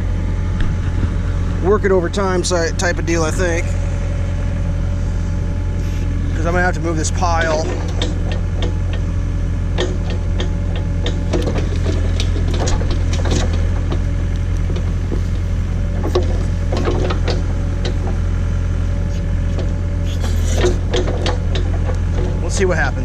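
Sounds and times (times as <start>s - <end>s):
tractor engine running: 0.0s - 23.0s
sharp clicks and knocks: 6.4s - 9.1s, 9.7s - 18.2s, 19.1s - 22.6s.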